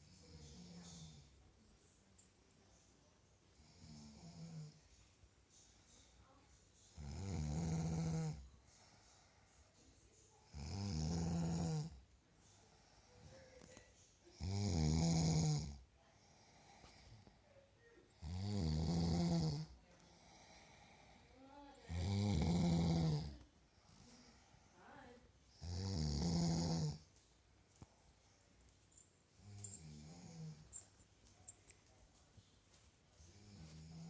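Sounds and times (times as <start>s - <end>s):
woman snoring: 3.6s - 4.8s, 7.0s - 8.4s, 10.4s - 12.0s, 14.4s - 15.8s, 18.2s - 24.4s, 25.6s - 27.0s, 29.4s - 30.7s, 33.4s - 34.0s.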